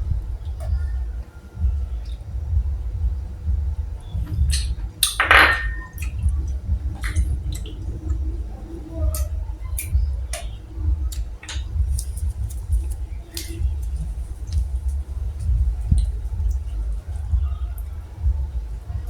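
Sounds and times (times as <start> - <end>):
shells knocking together: 5.0 - 5.9.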